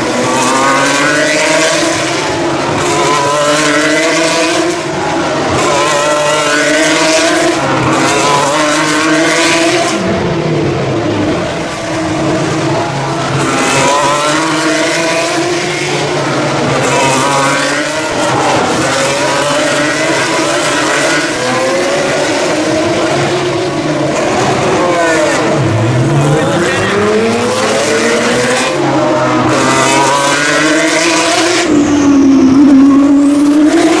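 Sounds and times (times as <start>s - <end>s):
race car engines revving: 0.0s - 34.0s.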